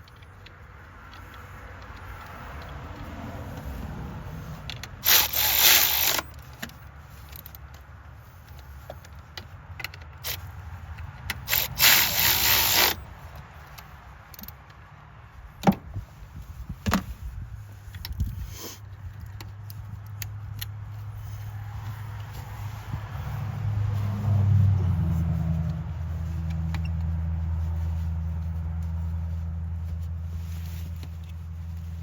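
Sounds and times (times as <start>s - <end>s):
low steady rumble: 0.0s - 32.0s
electric ratchet whirring: 5.0s - 6.4s, 11.3s - 13.0s.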